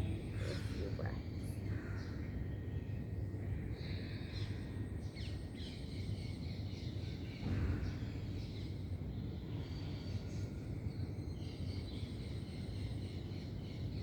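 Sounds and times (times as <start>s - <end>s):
low background rumble: 0.0s - 2.1s.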